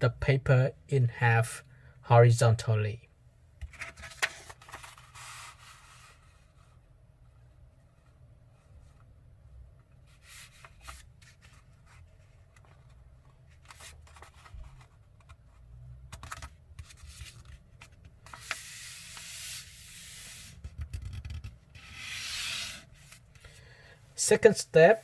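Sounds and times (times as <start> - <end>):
paper rustling and crinkling: 3.7 - 5.8
paper swishing rubs: 21.8 - 23.2.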